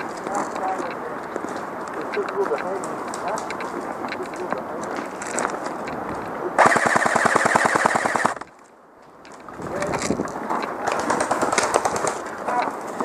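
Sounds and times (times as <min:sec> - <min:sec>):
airsoft rifle full-auto burst: 0:06.6 - 0:08.5.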